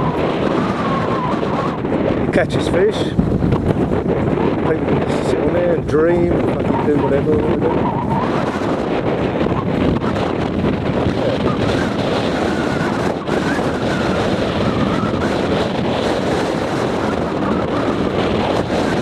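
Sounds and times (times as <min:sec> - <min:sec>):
boat noise: 0:00.0 - 0:19.0
wind buffeting microphone: 0:00.0 - 0:19.0.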